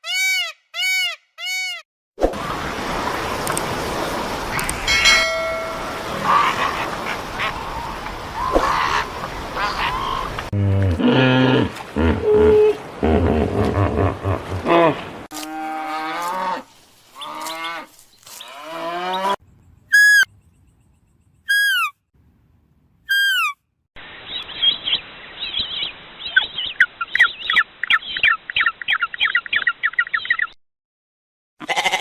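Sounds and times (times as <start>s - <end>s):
short falling animal calls: 5.4s - 10.4s
animal cries: 31.6s - 32.0s.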